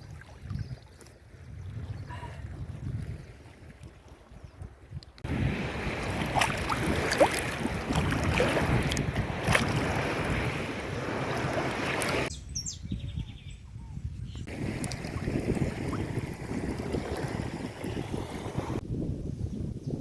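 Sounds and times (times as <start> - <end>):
water splashing and lapping: 0.0 - 12.3, 14.5 - 18.8
wind rushing over microphone: 0.0 - 20.0
sharp splashes or knocks: 5.9 - 10.6.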